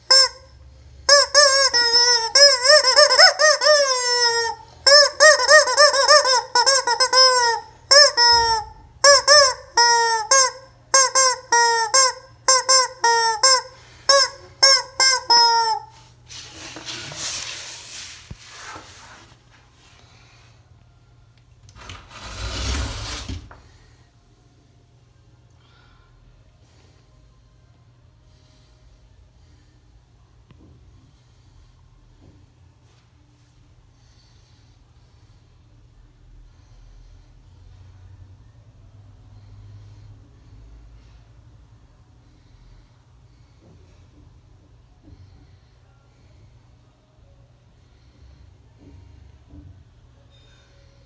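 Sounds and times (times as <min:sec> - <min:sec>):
rubber chicken toy squawking: 0:00.0 - 0:00.5, 0:01.1 - 0:15.9.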